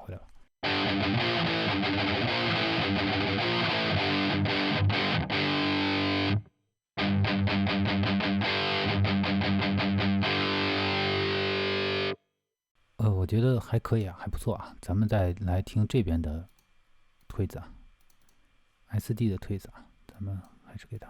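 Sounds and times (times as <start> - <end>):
distorted electric guitar: 0.6 - 12.2.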